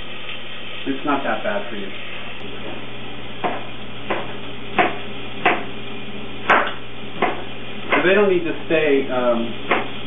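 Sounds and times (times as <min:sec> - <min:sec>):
knife chopping on cutting board: 0:03.4 - 0:05.7, 0:06.5 - 0:08.1, 0:09.7 - 0:10.0.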